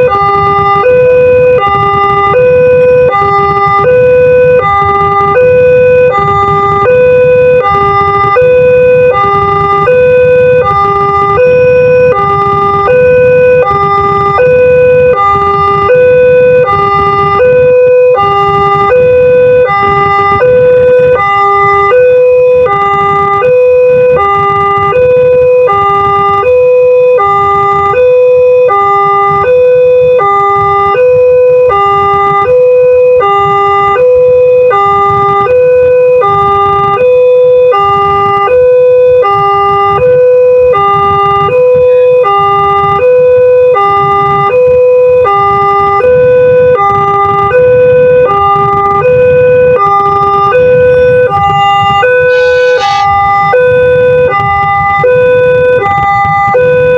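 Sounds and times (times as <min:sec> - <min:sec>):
level crossing siren alternating tones: 0:00.0 - 0:56.9.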